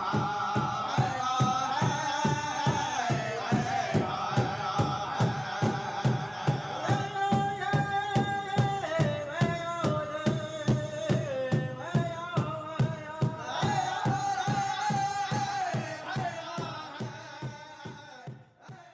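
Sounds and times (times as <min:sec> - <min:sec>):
big drum beating: 0:00.0 - 0:18.0
high held singing voices: 0:00.0 - 0:18.9.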